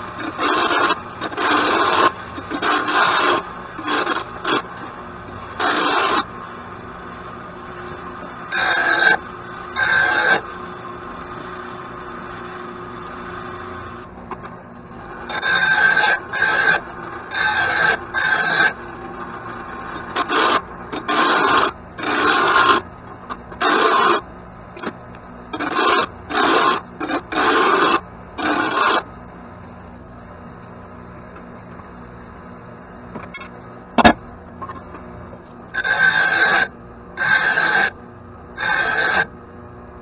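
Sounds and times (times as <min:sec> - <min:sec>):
file rasping on metal blade: 0:00.1 - 0:04.6, 0:05.6 - 0:06.3, 0:08.5 - 0:09.2, 0:09.8 - 0:10.4, 0:15.3 - 0:18.8, 0:19.9 - 0:22.8, 0:23.5 - 0:24.2, 0:25.6 - 0:29.0, 0:35.8 - 0:38.0, 0:38.6 - 0:39.3.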